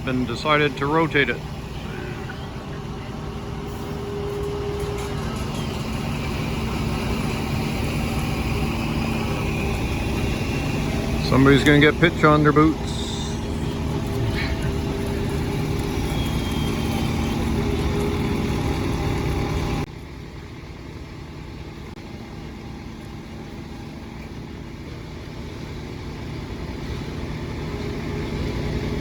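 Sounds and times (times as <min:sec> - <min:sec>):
heavy engine idling: 0:00.0 - 0:29.0.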